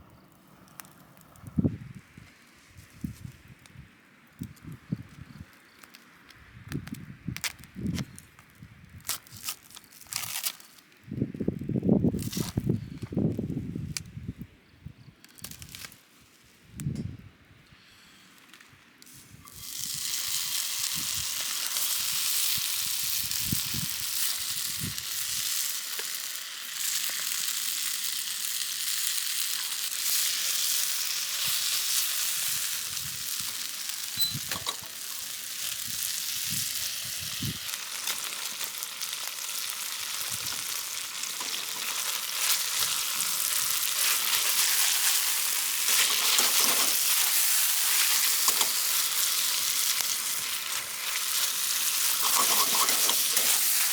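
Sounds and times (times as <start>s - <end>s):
food frying sizzle: 19.0s - 53.9s.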